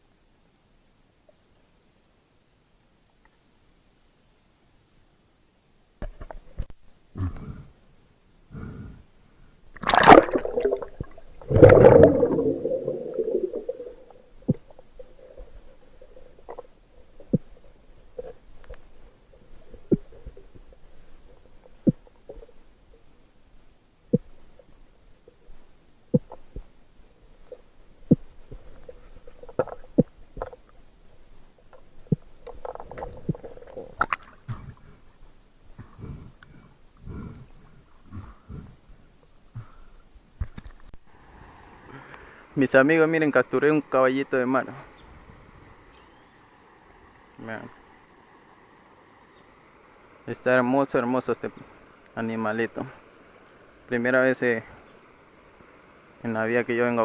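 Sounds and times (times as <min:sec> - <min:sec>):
faint low hum: 0:00.0 - 0:57.0
gurgling rushes of water underwater: 0:09.8 - 0:22.6, 0:32.0 - 0:34.5.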